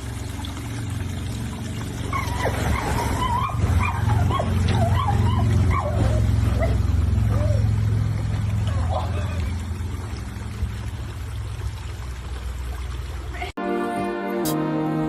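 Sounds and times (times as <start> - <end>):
dog whining and yipping: 2.0 - 7.7.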